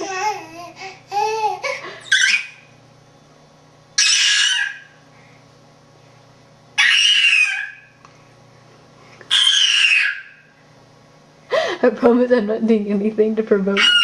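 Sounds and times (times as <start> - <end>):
shrill eagle-like screeches: 6.8 - 7.9, 9.3 - 10.5.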